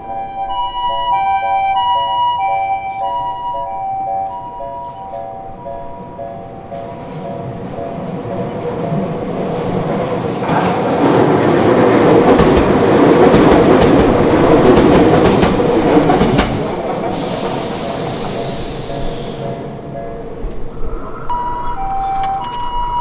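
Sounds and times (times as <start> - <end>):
crossing warning bell ringing: 0.0 - 9.2, 18.8 - 23.0
electric train rumbling past: 0.0 - 23.0
wheels clacking over rail joints: 6.8 - 17.8.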